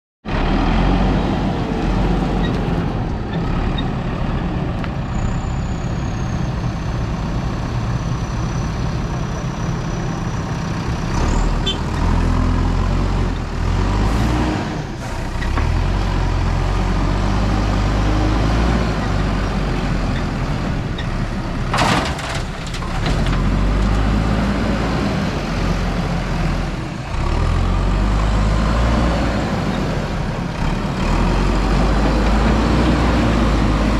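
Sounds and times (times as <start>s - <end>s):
diesel engine revving: 0.2s - 33.9s.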